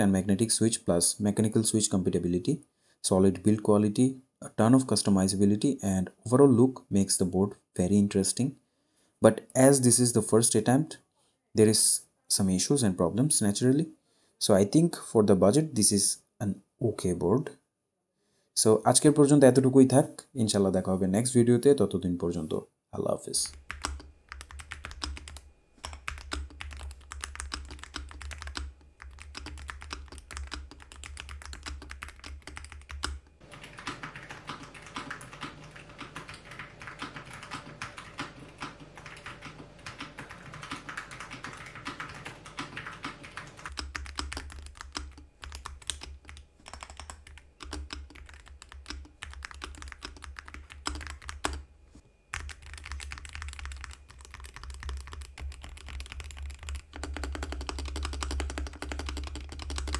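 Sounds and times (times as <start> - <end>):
fast keyboard typing: 23.4 - 51.6, 52.3 - 59.9.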